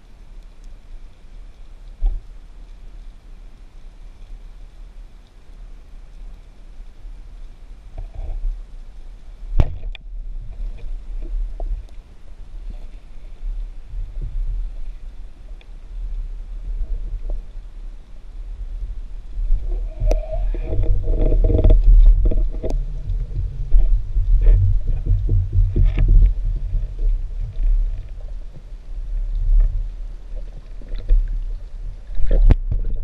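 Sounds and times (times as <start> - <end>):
underwater rumble of moving water: 0.0 - 33.0
sharp underwater clicks and knocks: 9.5 - 12.0, 19.5 - 28.6, 32.1 - 33.0.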